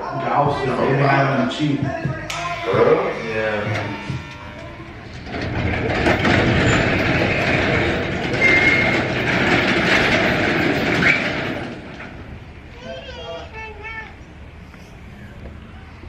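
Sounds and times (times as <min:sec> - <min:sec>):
high squeal: 0:02.3 - 0:11.7
rushing vehicle noise: 0:02.5 - 0:16.0.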